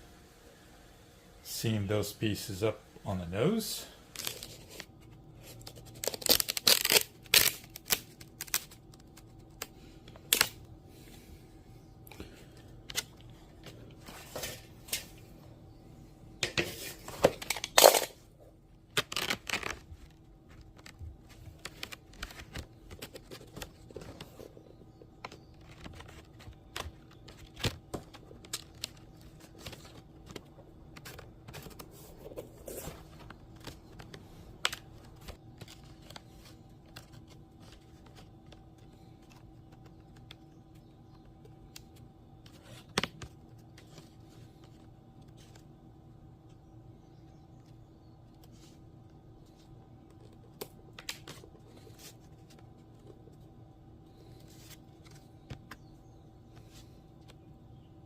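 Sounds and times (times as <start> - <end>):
veneer rustling and crinkling: 16.4 - 57.8.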